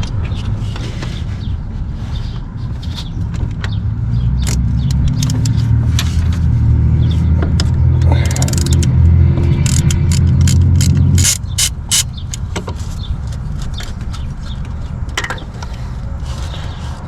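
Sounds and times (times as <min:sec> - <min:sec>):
metal hand tools clicking: 0:08.0 - 0:12.4.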